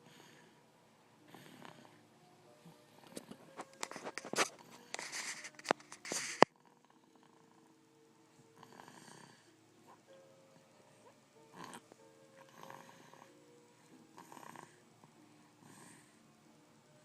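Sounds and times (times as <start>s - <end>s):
soft snoring breath: 0.0s - 16.5s
diaper crackling and rustling: 3.1s - 6.6s.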